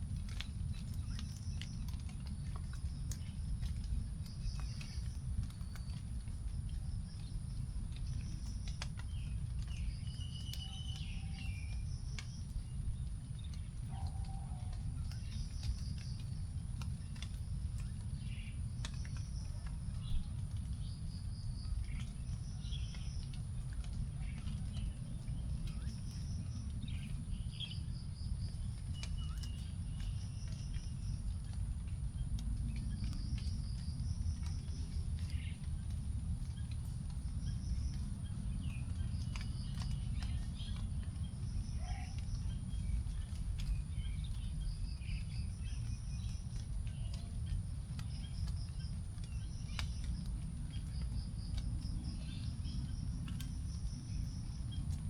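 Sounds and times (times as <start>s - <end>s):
low steady rumble: 0.0s - 55.0s
raindrops dripping on leaves: 0.0s - 55.0s
small bird chirps: 8.0s - 12.6s.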